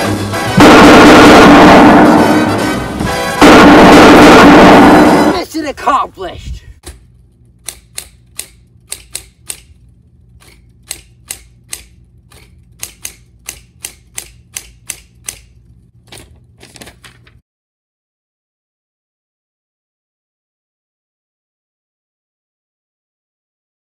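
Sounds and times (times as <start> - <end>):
sharp clicks: 7.6 - 15.6.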